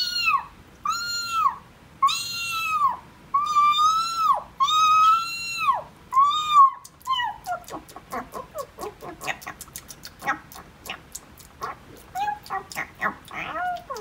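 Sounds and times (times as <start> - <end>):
woman imitating kitten meows: 0.0 - 7.7
quick smacking clicks: 8.8 - 14.0.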